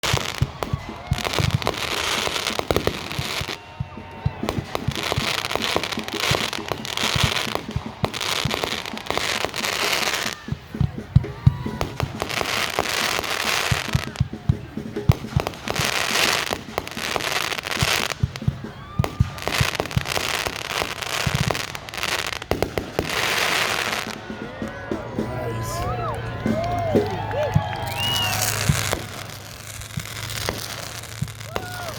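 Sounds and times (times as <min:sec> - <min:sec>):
fireworks bangs and crackles: 0:00.0 - 0:31.9
fireworks hissing: 0:27.6 - 0:31.9.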